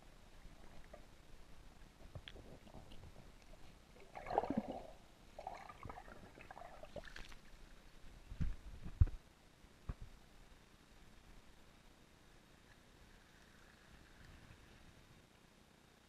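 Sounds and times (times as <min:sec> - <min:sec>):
bursts of bubbling: 0:04.0 - 0:07.3
water gurgling and splashing: 0:04.0 - 0:07.5.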